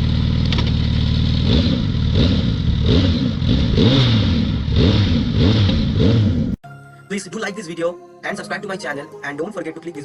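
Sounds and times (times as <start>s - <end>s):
motorcycle engine revving: 0.0s - 6.6s.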